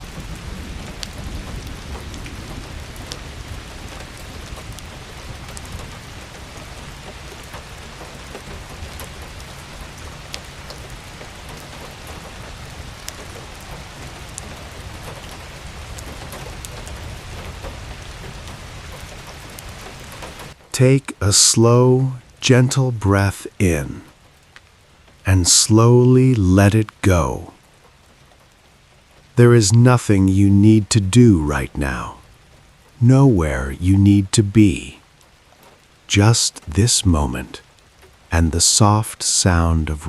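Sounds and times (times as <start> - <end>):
sharp raindrop ticks: 0.0 - 20.7, 24.1 - 25.3, 26.8 - 29.4, 35.0 - 36.1, 37.6 - 38.3
steady rainfall: 0.0 - 40.0.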